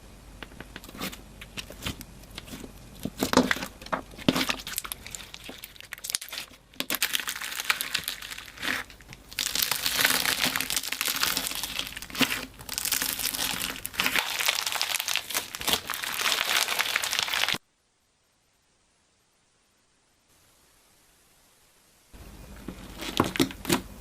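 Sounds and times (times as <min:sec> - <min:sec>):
crunchy slime crackling: 0:00.8 - 0:17.6.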